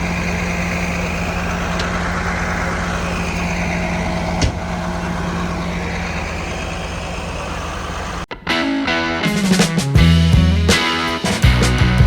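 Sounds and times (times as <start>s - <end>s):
heavy engine running: 0.0s - 8.3s, 10.0s - 12.0s.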